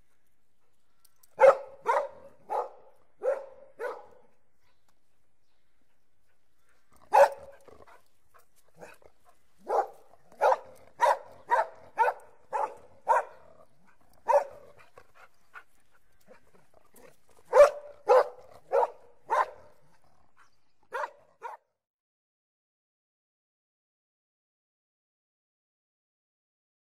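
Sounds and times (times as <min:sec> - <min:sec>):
dog barking angrily: 0:01.4 - 0:04.3, 0:07.0 - 0:08.0, 0:08.8 - 0:15.0, 0:17.0 - 0:19.9, 0:20.9 - 0:21.7.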